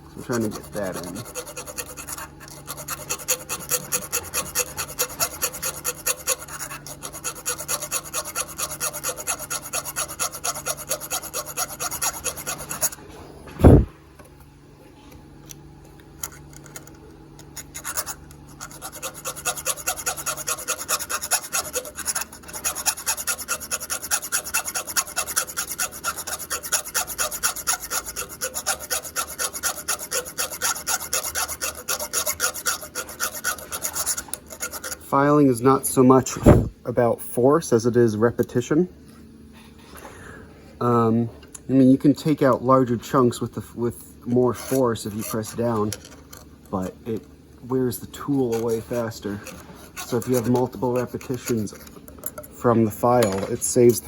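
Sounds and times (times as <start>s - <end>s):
hand file rasping on metal: 0.2s - 13.0s, 17.5s - 35.4s, 44.3s - 46.4s, 48.1s - 52.4s
loud thump: 13.5s - 13.9s, 36.4s - 36.8s.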